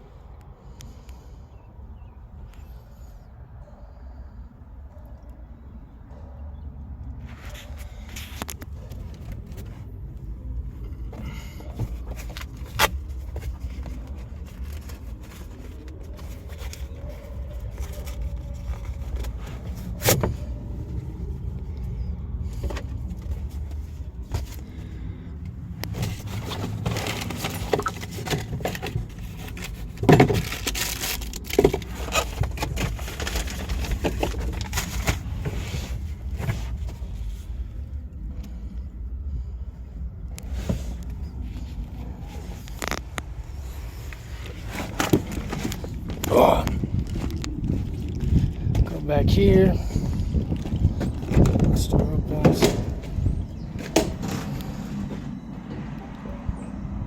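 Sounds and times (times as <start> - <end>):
steady low rumble: 31.8 - 57.0.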